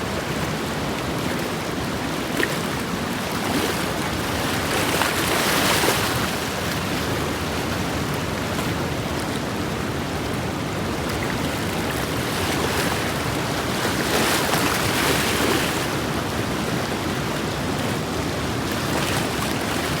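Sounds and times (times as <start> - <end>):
river water rushing: 0.1 - 20.0.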